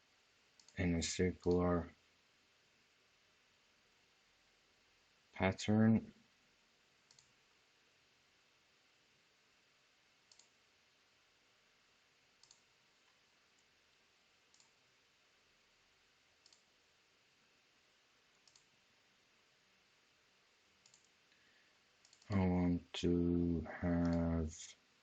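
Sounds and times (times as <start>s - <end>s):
computer mouse double clicks: 10.3s - 10.5s.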